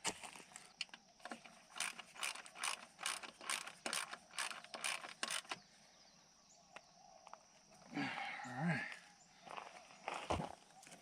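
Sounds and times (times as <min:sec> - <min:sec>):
ratchet wrench clicking: 0:01.7 - 0:05.6.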